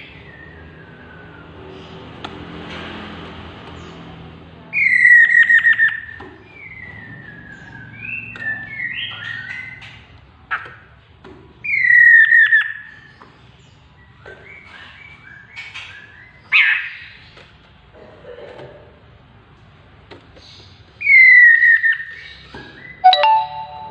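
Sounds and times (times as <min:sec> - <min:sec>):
soft gliding bird notes: 0:23.0 - 0:23.9.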